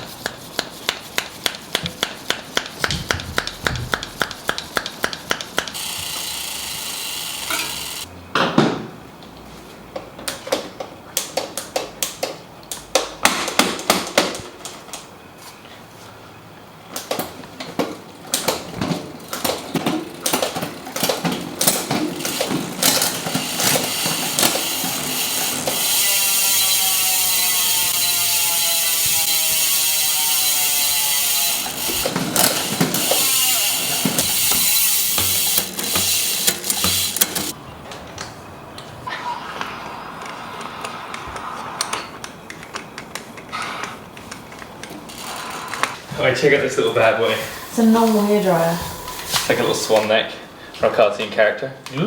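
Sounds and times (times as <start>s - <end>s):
tools knocking on bike parts: 0.2s - 6.0s, 31.7s - 37.6s
rapid ratchet clicking: 0.2s - 8.1s, 19.2s - 37.6s
steady hiss: 46.3s - 50.7s.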